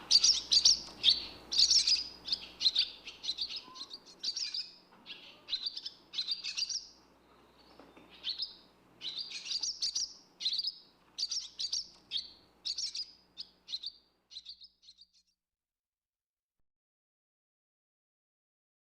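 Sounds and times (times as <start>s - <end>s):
swallow chirping: 0.0s - 15.2s.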